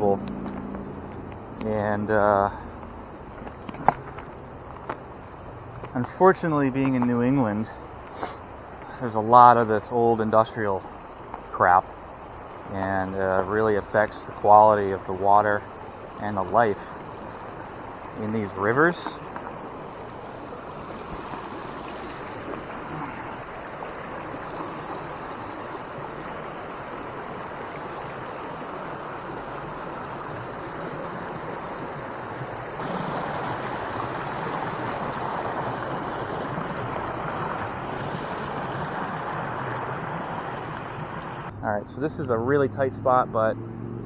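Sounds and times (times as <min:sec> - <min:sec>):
river water rushing: 0:00.0 - 0:43.9.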